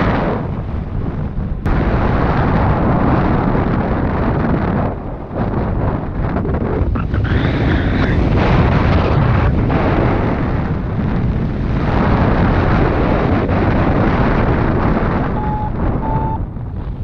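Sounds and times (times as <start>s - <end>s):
strong wind on microphone: 0.0s - 17.0s
short beep: 15.3s - 16.4s.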